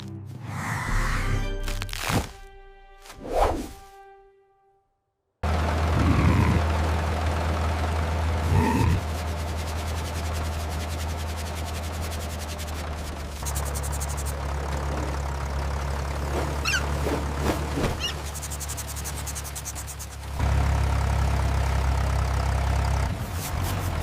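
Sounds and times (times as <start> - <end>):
tractor engine running: 5.4 - 24.0
fast rattling clatter: 8.6 - 20.4
short high squeaks: 16.5 - 17.1, 17.8 - 20.2.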